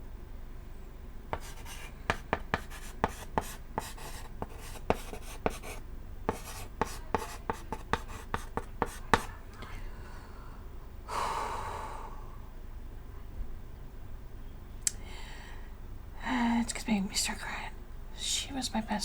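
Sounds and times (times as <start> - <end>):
chalk writing on chalkboard: 1.3 - 9.4.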